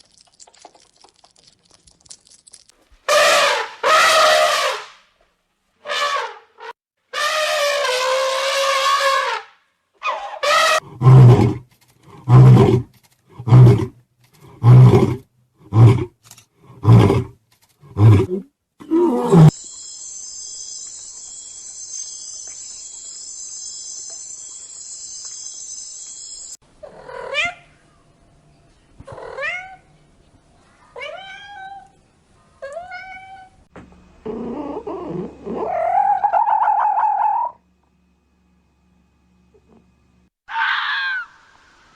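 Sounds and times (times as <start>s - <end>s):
deep roaring grunts: 10.8s - 11.6s, 14.5s - 16.1s
steady high buzz: 19.5s - 26.6s.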